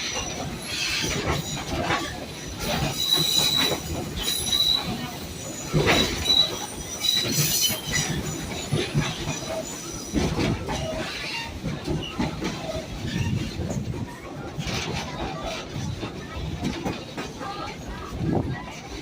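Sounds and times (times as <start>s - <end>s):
train wheels squealing: 0.0s - 13.7s
train cars rumbling and rattling: 0.0s - 19.0s.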